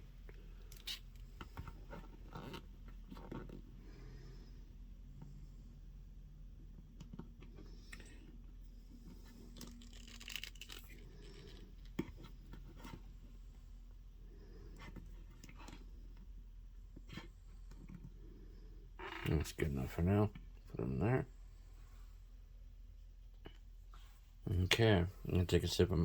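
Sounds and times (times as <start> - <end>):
plastic figure handling scrapes: 9.0 - 13.1.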